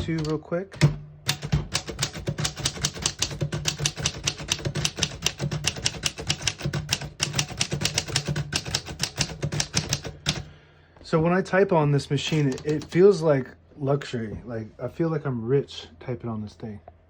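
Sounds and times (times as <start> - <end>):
manual typewriter typing: 0.0 - 10.5, 12.2 - 13.0.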